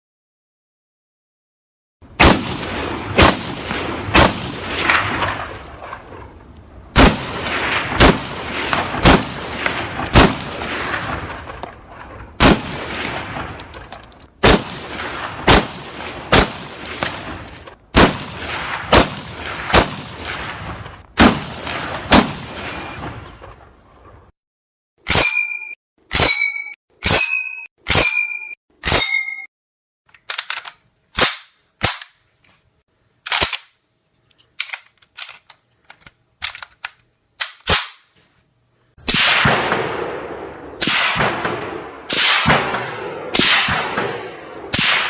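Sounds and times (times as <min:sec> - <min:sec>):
rifle shots echoing: 0:02.2 - 0:06.3, 0:06.9 - 0:23.6, 0:39.0 - 0:45.0
ringing metallic pings: 0:25.1 - 0:29.5.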